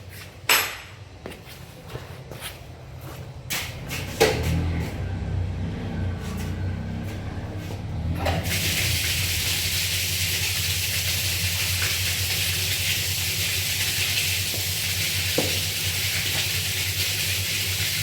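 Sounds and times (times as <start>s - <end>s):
electric water pump humming: 8.0s - 18.0s
water gushing: 8.3s - 18.0s.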